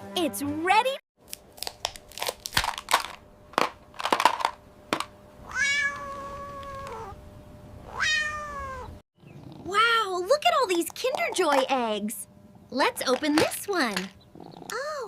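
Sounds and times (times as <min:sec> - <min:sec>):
cat meowing: 0:05.5 - 0:07.2, 0:07.9 - 0:09.0.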